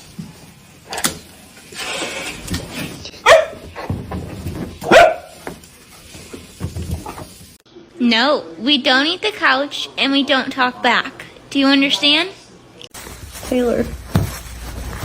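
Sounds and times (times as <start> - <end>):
dog barking: 3.2 - 3.8, 4.8 - 5.4.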